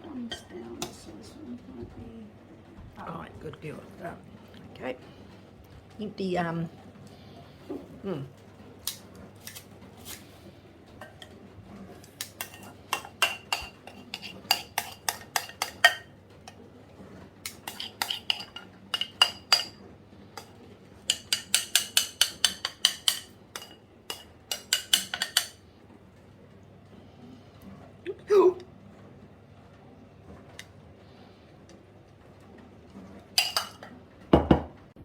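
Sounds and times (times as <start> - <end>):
metal utensil clinking on cookware: 12.2 - 16.6, 17.5 - 19.8, 20.4 - 25.6, 33.4 - 33.9.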